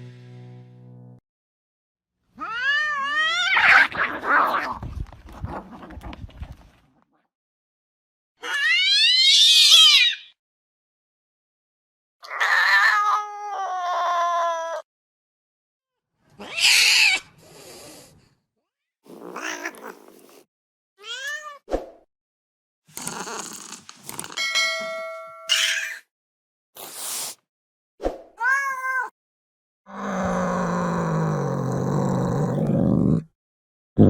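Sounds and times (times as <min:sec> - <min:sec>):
cat yowling: 0:02.4 - 0:04.4, 0:08.4 - 0:10.3, 0:12.2 - 0:14.8, 0:16.4 - 0:17.3, 0:28.4 - 0:29.1
cat hissing and snarling: 0:16.4 - 0:18.2, 0:19.1 - 0:20.5, 0:22.9 - 0:24.2, 0:26.8 - 0:27.5.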